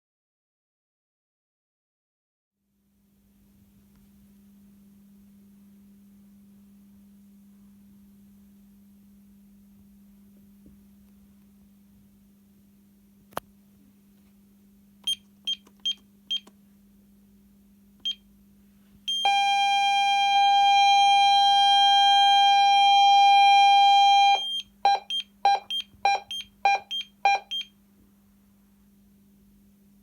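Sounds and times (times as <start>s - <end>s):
rapid pulsed alarm beeps: 19.1s - 27.7s
short high alarm beeps: 19.1s - 27.7s
two-pitch alarm tone: 19.1s - 27.7s.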